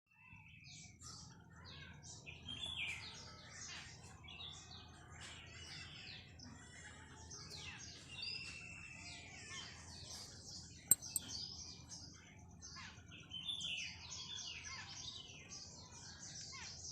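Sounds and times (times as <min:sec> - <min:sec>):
sharp clicks: 0:10.9 - 0:11.2
small birds chirping: 0:10.9 - 0:11.4.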